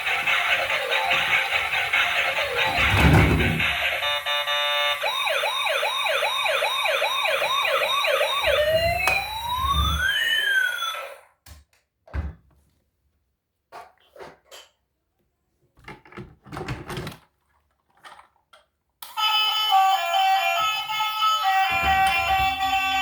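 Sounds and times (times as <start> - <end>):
toy electronic siren: 0.0 - 11.3, 19.0 - 23.0.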